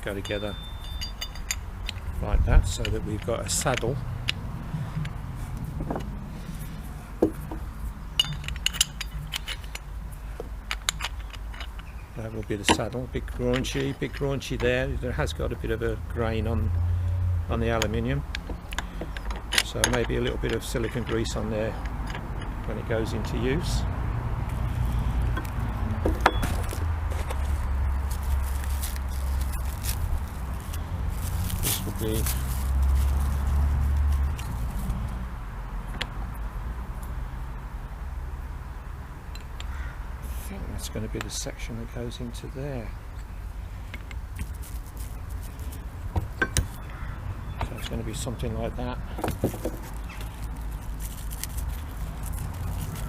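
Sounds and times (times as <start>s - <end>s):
metal parts clicking together: 0.0s - 4.4s, 8.1s - 14.7s, 17.8s - 22.5s
sharp metallic clink: 0.2s - 1.7s.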